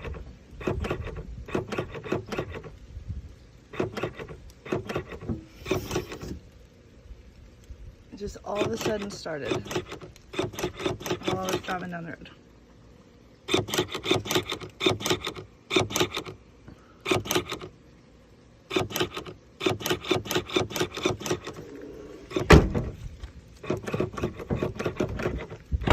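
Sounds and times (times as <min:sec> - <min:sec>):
heavy thump: 0:22.3 - 0:23.0.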